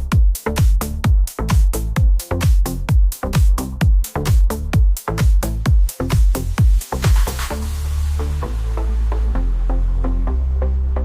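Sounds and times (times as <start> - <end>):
music with thumping drum beat: 0.0 - 8.4.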